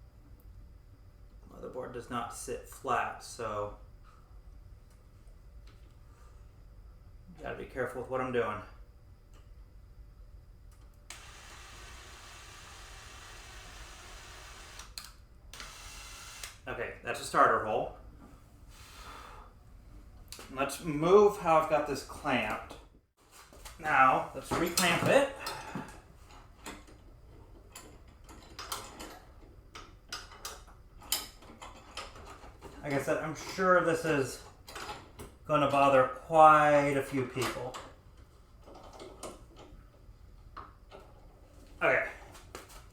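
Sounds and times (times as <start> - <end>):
electric drill running: 11.1 - 16.6.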